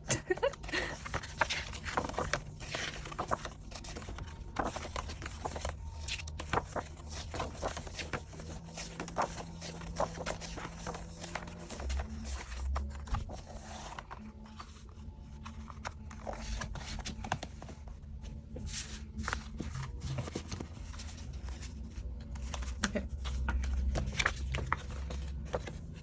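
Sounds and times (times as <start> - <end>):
paper and card rustling: 0.0 - 26.0.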